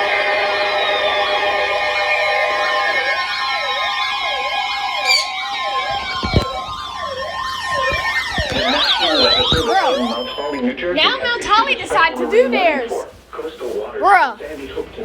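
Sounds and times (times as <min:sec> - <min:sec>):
steady alarm tones: 0:03.5 - 0:10.8
siren-like sweeping tone: 0:05.0 - 0:10.4
dull thumps: 0:05.2 - 0:06.8.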